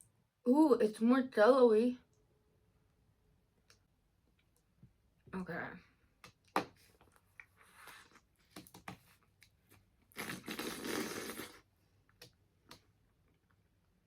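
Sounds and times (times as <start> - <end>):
person chewing candy: 7.0 - 8.4.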